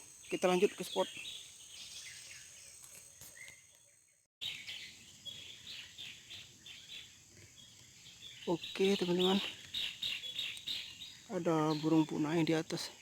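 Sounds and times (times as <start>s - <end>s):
bird calls and chirps: 0.0s - 13.0s
faint forest ambience: 0.0s - 13.0s.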